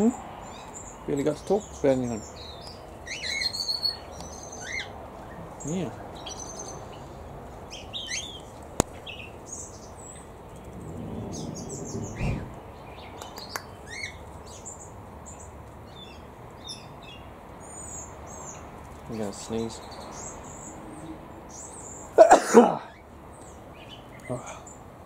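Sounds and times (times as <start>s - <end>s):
aviary birds chirping: 0.0s - 25.0s
low thump: 11.9s - 12.6s.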